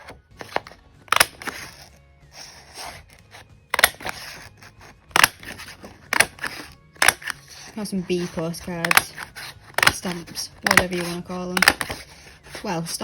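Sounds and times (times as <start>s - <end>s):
hole punch clacking: 0.0s - 1.7s, 3.7s - 4.4s, 5.1s - 7.7s, 8.3s - 12.1s
paper sliding and rustling: 0.0s - 9.8s.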